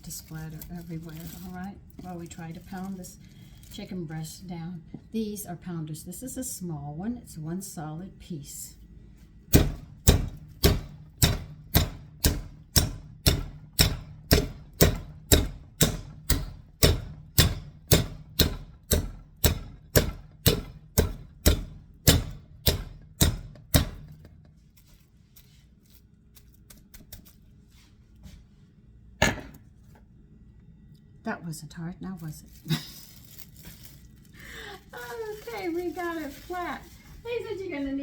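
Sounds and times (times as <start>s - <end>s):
meat pounder beating chicken: 9.5s - 24.4s.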